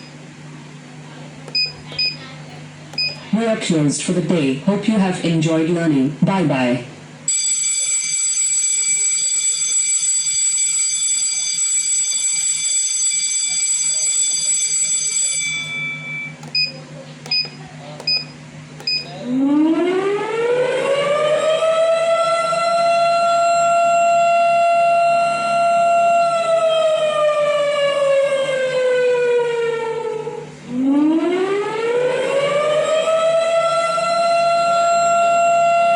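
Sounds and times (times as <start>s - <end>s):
short beeps: 1.5s - 2.2s, 3.0s - 3.2s, 15.5s - 19.2s.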